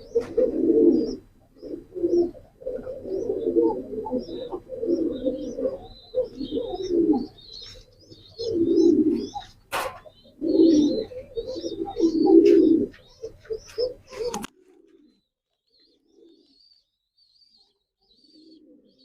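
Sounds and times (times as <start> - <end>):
pigeons cooing: 0.0 - 19.0.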